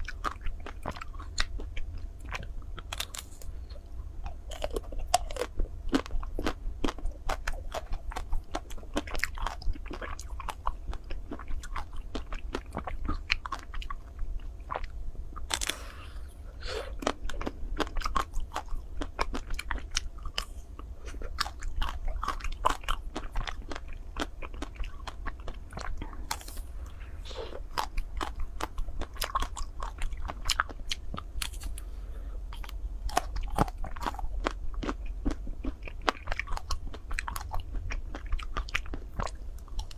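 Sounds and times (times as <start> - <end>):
chocolate shell crunching: 2.8 - 3.5.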